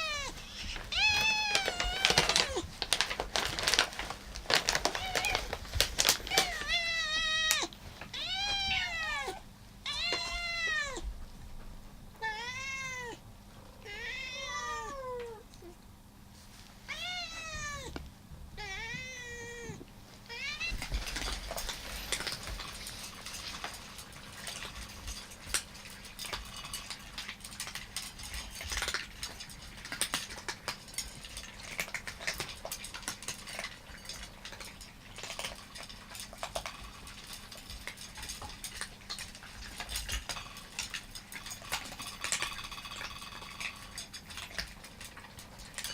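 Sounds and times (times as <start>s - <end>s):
cats meowing: 0.0s - 11.2s, 12.2s - 15.8s, 16.9s - 22.6s
cats chewing dry food: 0.0s - 45.9s.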